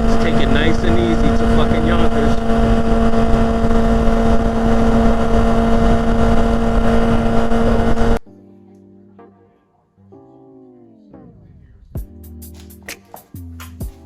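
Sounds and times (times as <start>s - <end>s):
heavy wind noise: 0.0s - 8.2s
motorcycle engine running: 0.0s - 8.2s
faint music: 8.2s - 14.0s.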